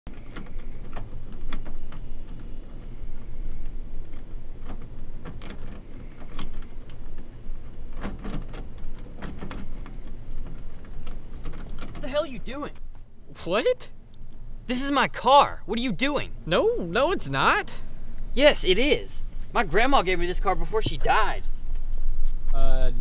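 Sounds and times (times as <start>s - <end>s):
sharp clicks and rattles: 0.1s - 13.1s.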